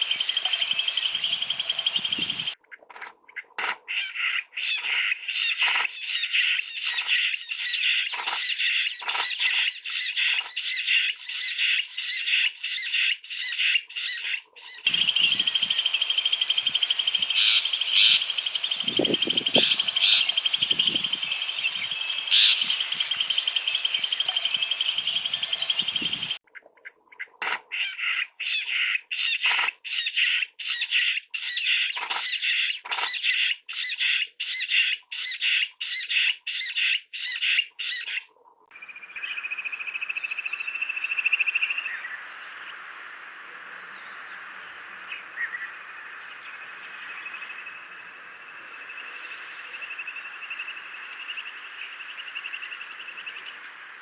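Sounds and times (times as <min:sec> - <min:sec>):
quail calling repeated notes: 0:00.0 - 0:02.6, 0:14.9 - 0:26.4
high-pitched bird trill: 0:14.9 - 0:26.4.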